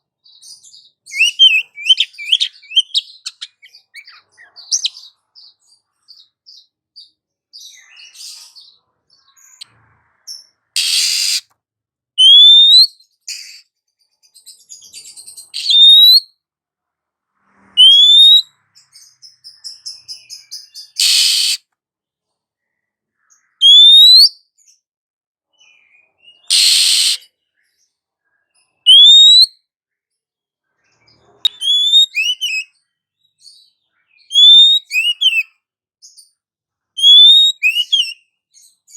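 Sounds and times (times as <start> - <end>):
bird chatter: 0.4 - 6.7, 10.4 - 11.5, 13.2 - 15.9, 17.8 - 21.6, 26.3 - 27.2
bird harsh rasping calls: 1.1 - 5.1, 10.8 - 11.5, 13.3 - 13.6, 15.5 - 16.2, 17.8 - 18.4, 19.3 - 21.6, 26.4 - 27.3, 31.5 - 32.6, 37.0 - 38.2
bird whistled calls: 1.1 - 5.1, 10.8 - 11.4, 12.2 - 13.6, 15.6 - 16.3, 17.8 - 18.5, 19.7 - 21.6, 23.5 - 24.4, 26.3 - 27.3, 28.9 - 29.6, 31.5 - 32.8, 33.5 - 35.5, 37.0 - 38.2.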